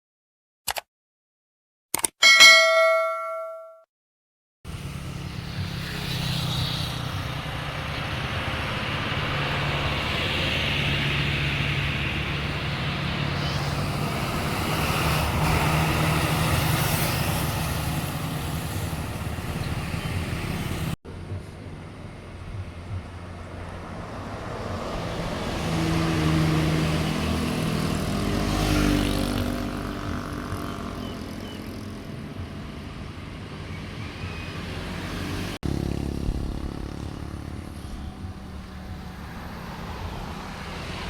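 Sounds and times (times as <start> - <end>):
bright bell ding: 2.2 - 3.8.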